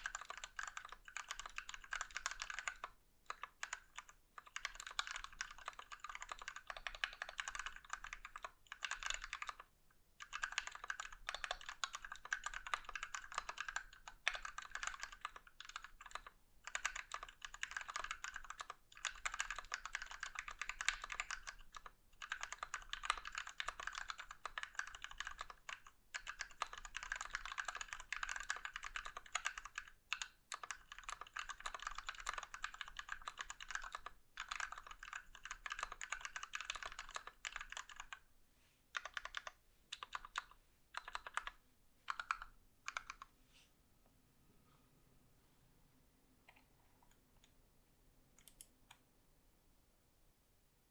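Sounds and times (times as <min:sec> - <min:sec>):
mechanical keyboard typing: 0:00.0 - 0:38.2, 0:39.0 - 0:43.3.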